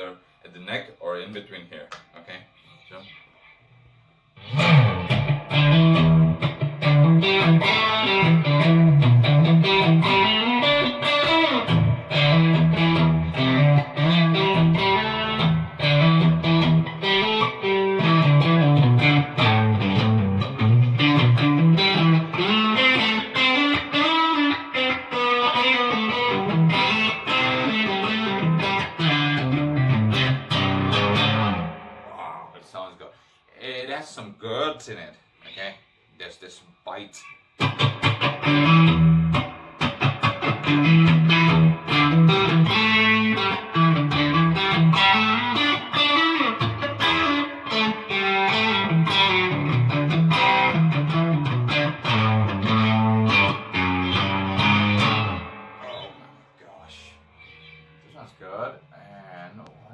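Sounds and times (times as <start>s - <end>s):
overdriven electric guitar: 4.4s - 32.1s, 37.6s - 56.5s.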